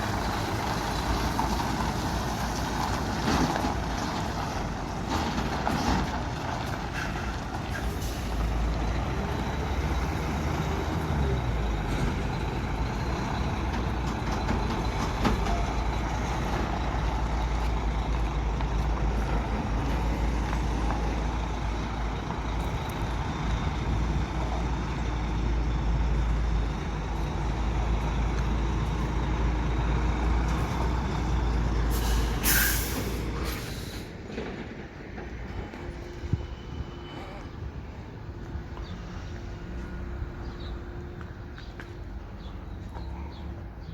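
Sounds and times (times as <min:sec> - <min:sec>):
diesel engine rumbling: 0:00.0 - 0:43.9
air hiss: 0:31.9 - 0:34.1.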